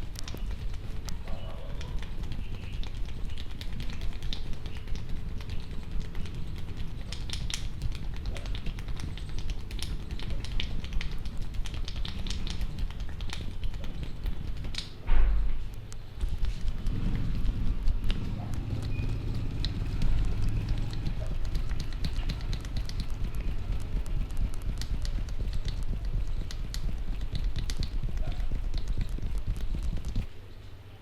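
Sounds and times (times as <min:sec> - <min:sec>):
hands rubbing hair: 0:00.0 - 0:15.0, 0:16.2 - 0:30.3
light taps on scalp: 0:00.0 - 0:30.3
low rumble: 0:00.0 - 0:30.3
heavy thump: 0:15.0 - 0:15.7.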